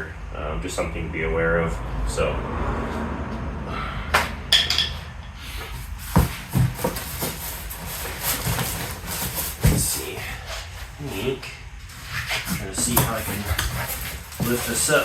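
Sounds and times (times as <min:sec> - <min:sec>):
cardboard rustling: 0:05.8 - 0:15.0
cardboard box knocks and thumps: 0:06.1 - 0:09.9.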